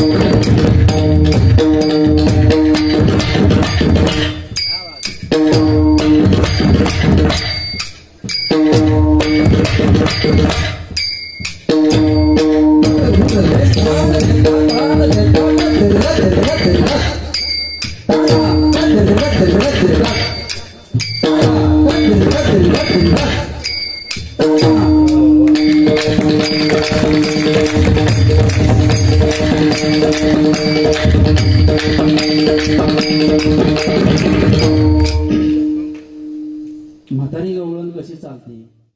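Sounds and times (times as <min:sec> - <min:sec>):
fast drum strokes: 0:24.4 - 0:35.6.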